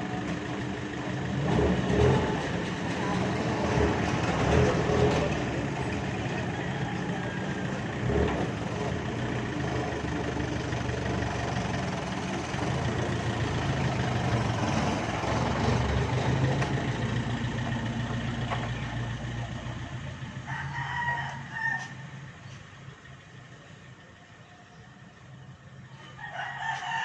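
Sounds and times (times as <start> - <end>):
engine running: 0.0 - 26.2
rooster crowing: 6.1 - 7.9, 20.4 - 22.1, 26.0 - 27.0.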